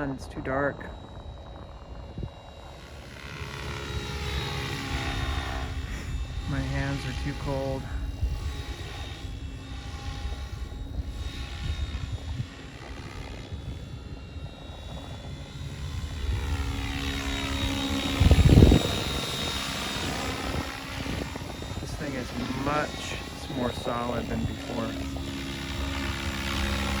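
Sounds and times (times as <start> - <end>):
model helicopter rotor: 0.0 - 27.0
loud low rush: 15.9 - 27.0.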